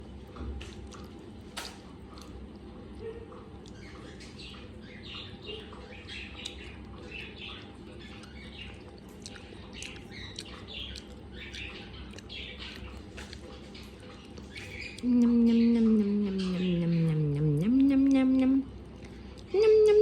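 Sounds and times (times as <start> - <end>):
parrot chirping and squawking: 3.0 - 17.2.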